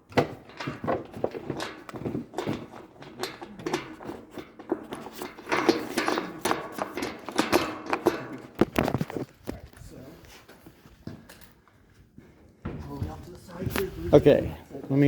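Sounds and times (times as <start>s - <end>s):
metal bolts clicking: 0.1s - 9.2s.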